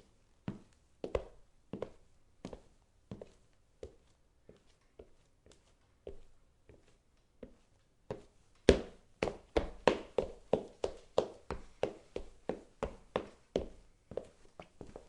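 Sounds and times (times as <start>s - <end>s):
footsteps on hardwood floor: 4.5s - 15.0s.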